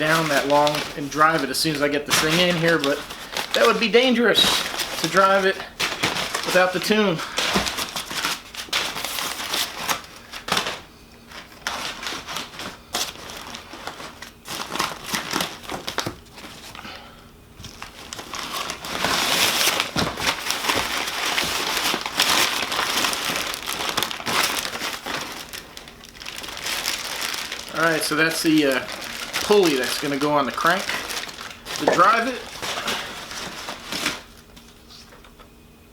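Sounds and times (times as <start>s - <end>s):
packaging crinkling and rustling: 0.0s - 17.0s, 17.6s - 35.5s.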